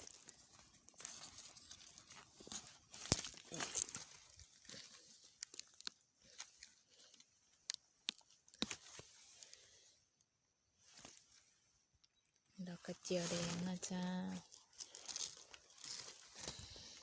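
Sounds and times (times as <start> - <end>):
dry leaves crunching and rustling: 0.0 - 5.2, 12.9 - 16.5.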